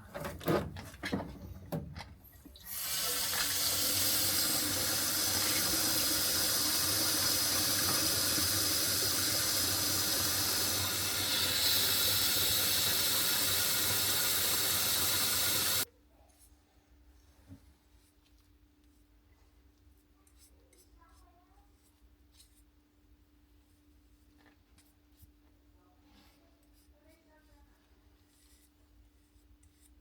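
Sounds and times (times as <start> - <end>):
water running from a tap: 2.6 - 15.8.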